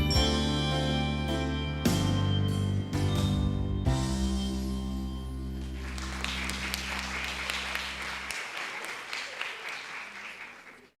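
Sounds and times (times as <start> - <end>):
audience applauding: 5.6 - 11.0.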